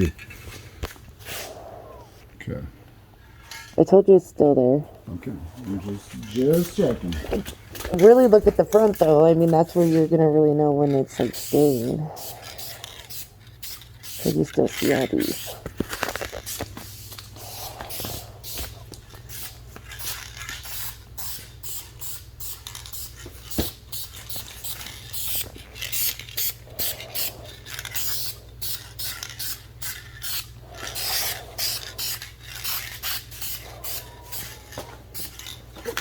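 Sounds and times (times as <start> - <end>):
spray paint can hissing: 11.2 - 35.4.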